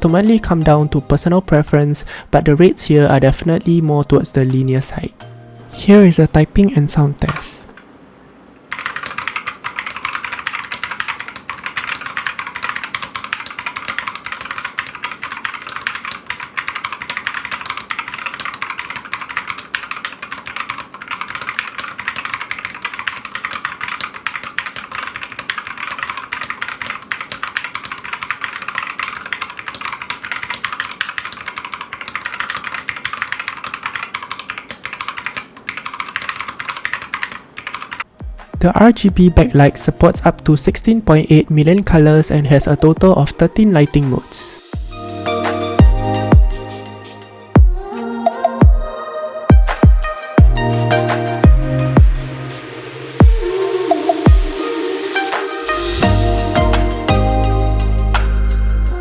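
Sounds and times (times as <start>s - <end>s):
fast keyboard typing: 8.7s - 38.9s.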